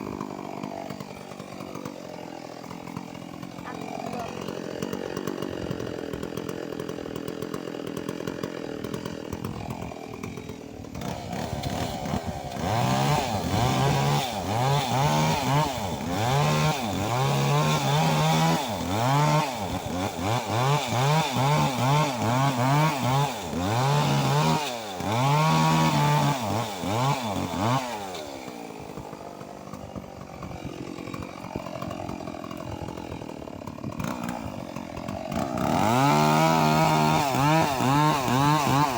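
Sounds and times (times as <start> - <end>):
chainsaw idling and revving: 0.0 - 38.9.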